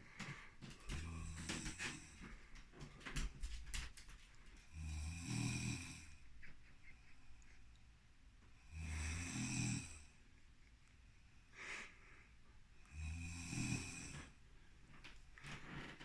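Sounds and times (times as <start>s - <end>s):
soft breath: 0.0s - 3.2s, 11.5s - 12.6s
person snoring: 0.8s - 2.1s, 4.7s - 6.2s, 8.7s - 10.1s, 12.9s - 14.3s.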